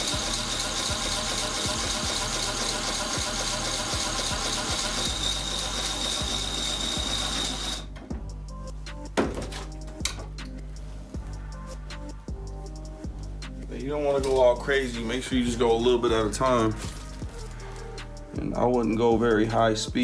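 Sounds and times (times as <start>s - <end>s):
drill grinding metal: 0.0s - 7.9s.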